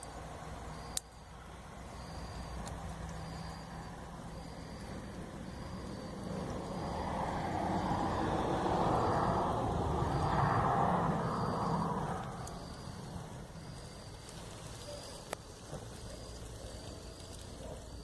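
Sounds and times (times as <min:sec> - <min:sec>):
insect chirping: 0:00.0 - 0:18.0
vehicle passing on road: 0:00.0 - 0:18.0.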